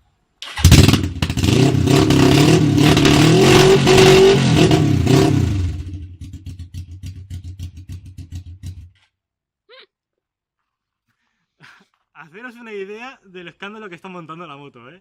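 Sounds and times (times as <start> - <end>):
motorcycle engine revving: 0.4 - 9.0.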